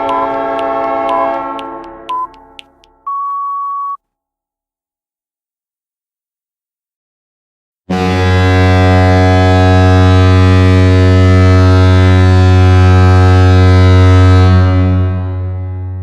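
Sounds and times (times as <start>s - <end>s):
deep goal horn blast: 0.0s - 2.6s, 7.9s - 16.0s.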